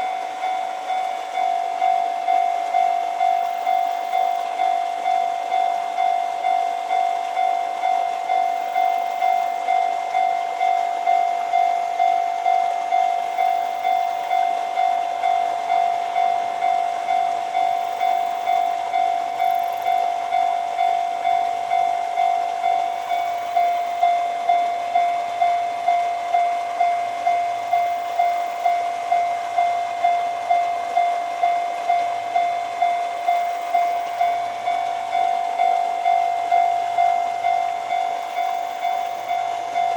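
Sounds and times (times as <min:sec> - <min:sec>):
level crossing bell ringing: 0:30.6 - 0:39.9.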